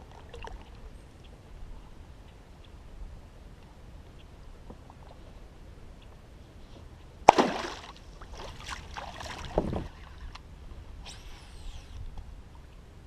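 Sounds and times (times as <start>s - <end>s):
sharp splash on water: 7.3s - 8.0s
water sloshing: 7.3s - 10.4s.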